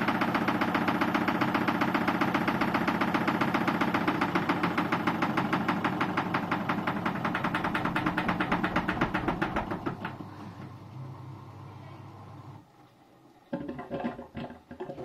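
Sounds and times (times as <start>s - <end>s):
washing machine drum knocking: 0.0s - 10.4s.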